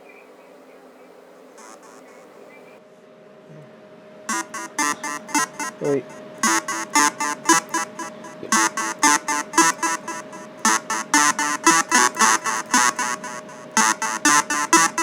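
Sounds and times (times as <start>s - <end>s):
steady held synth tone: 4.3s - 15.0s
synthesizer bleeps: 4.3s - 15.0s.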